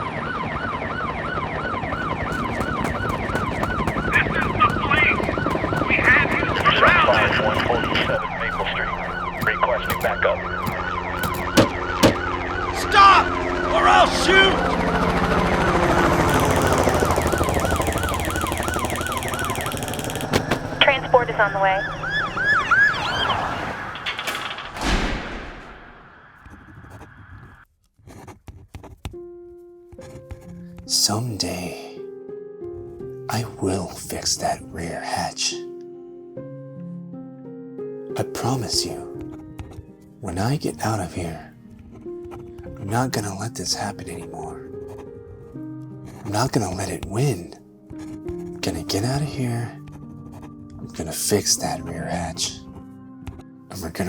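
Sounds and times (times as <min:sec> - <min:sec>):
higher siren: 0:00.0 - 0:23.9
emergency siren yelping: 0:00.0 - 0:24.0
fast regular clicking: 0:02.0 - 0:12.2, 0:16.6 - 0:20.8
sharp bangs with echo: 0:02.0 - 0:12.4.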